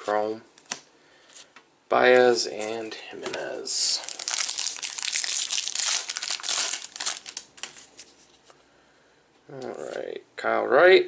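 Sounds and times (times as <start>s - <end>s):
plastic wrapper crinkling: 2.6s - 8.3s.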